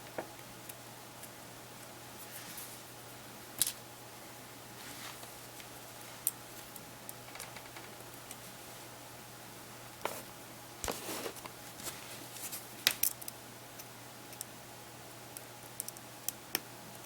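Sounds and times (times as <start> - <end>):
scraping rustle: 4.8 - 5.4.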